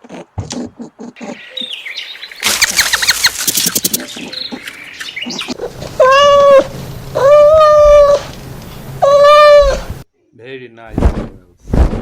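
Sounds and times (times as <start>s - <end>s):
bird chirps: 1.2s - 5.6s.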